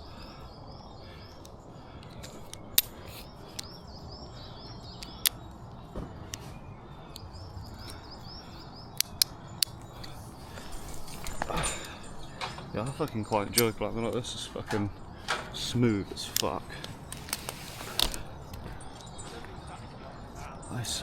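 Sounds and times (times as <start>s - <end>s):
faint outdoor background noise: 0.0s - 21.0s
small bird chirping: 0.0s - 21.0s
sharp clicks: 1.3s - 3.9s, 4.8s - 5.6s, 7.1s - 19.2s.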